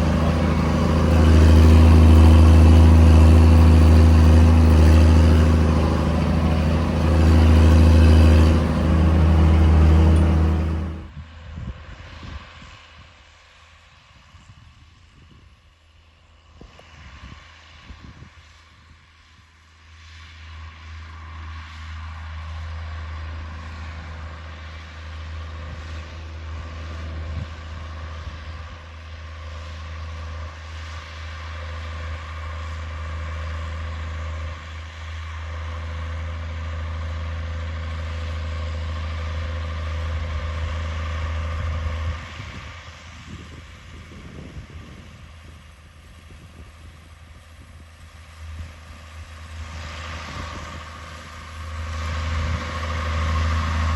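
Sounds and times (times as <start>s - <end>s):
tractor engine droning: 0.0s - 11.1s.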